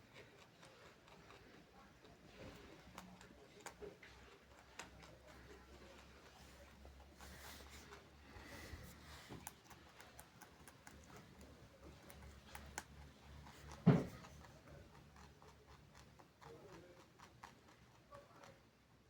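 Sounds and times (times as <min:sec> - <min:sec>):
animal chewing peel crunching: 0:00.0 - 0:18.1
dull thump: 0:13.8 - 0:14.2.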